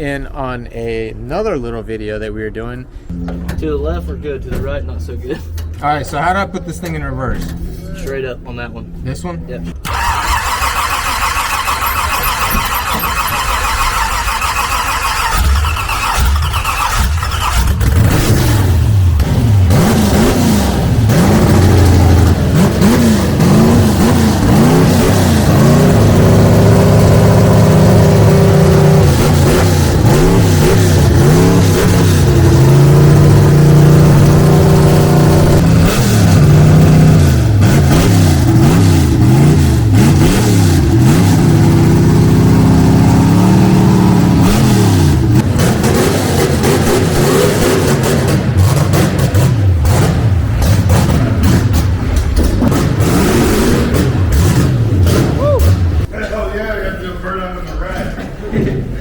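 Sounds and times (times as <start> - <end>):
car engine revving: 3.0 - 56.1.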